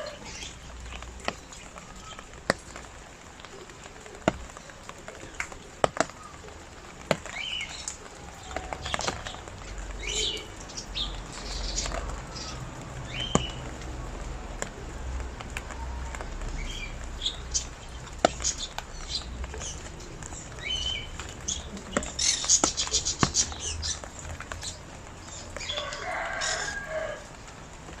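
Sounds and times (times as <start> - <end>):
rain dripping and pattering: 0.0 - 28.0.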